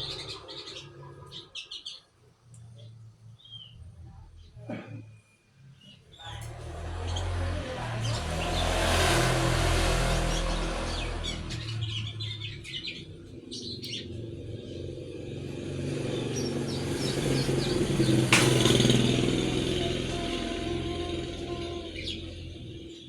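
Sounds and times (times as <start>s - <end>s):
hum of passing vehicles: 0.0s - 4.6s, 6.2s - 23.0s
songbird chirping: 5.8s - 23.0s.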